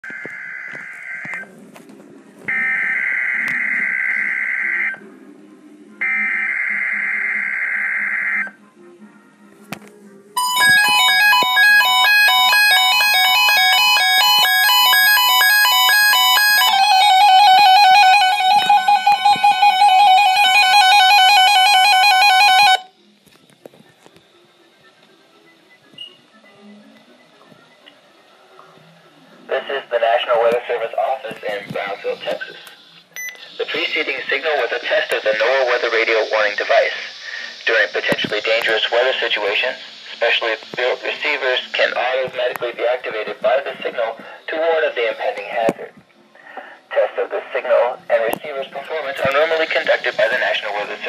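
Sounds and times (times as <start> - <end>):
electronic alarm beeping and warbling: 0.0 - 1.5, 2.5 - 5.0, 6.0 - 8.6, 10.4 - 22.9, 49.0 - 51.0.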